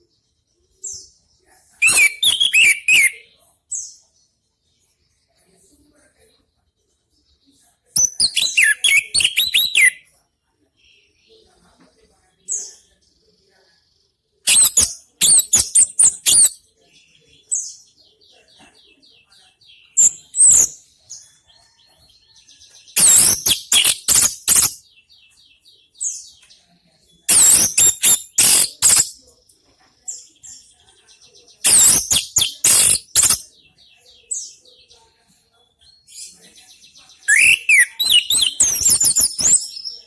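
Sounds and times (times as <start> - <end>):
rapid twittering: 8.0 - 10.0, 14.5 - 16.6, 23.0 - 24.8, 27.3 - 29.2, 31.6 - 33.4, 37.3 - 39.8.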